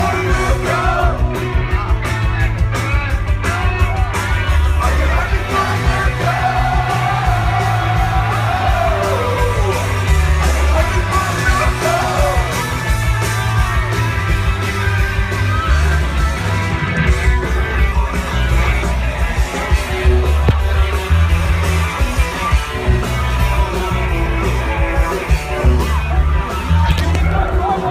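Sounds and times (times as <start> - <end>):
rock band playing live: 0.0 - 27.9.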